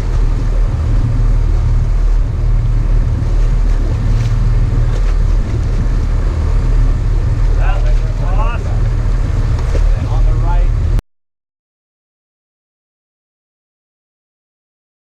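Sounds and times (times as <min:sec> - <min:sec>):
boat engine droning: 0:00.0 - 0:11.0
water rushing: 0:00.0 - 0:11.0
wind: 0:00.0 - 0:11.0.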